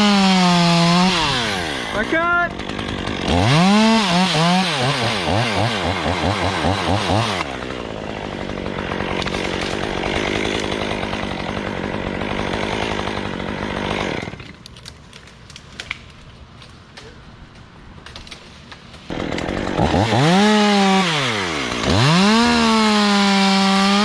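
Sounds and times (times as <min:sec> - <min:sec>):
chainsaw cutting wood: 0:00.0 - 0:16.1, 0:18.0 - 0:24.0.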